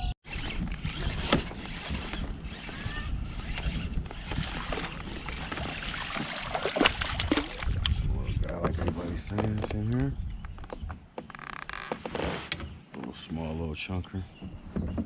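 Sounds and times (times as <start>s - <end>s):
knocks and rattles on a kayak: 0.6s - 13.5s, 14.2s - 15.0s
water splashing: 4.2s - 7.8s.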